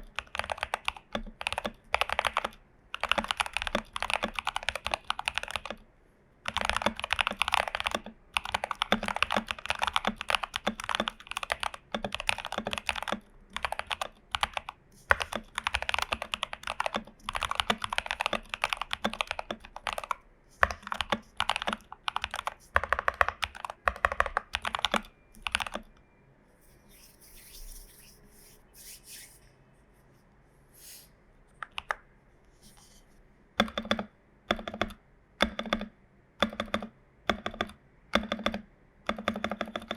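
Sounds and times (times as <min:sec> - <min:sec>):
typing on mechanical keyboard: 0:00.0 - 0:05.8, 0:06.4 - 0:25.9, 0:31.6 - 0:32.0, 0:33.6 - 0:39.9.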